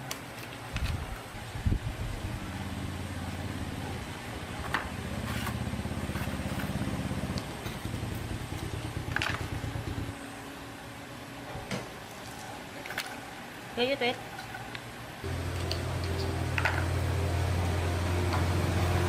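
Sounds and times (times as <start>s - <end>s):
small petrol engine running: 2.4s - 10.2s, 15.3s - 19.0s.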